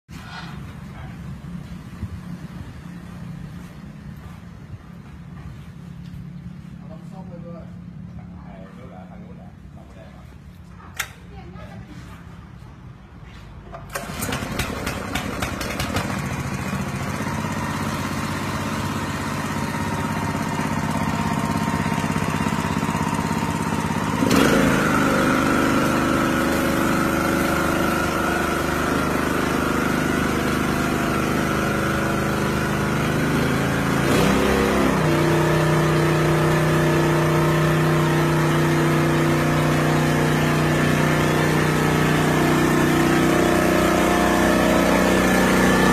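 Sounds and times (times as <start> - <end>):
small petrol engine running: 13.9 - 45.9.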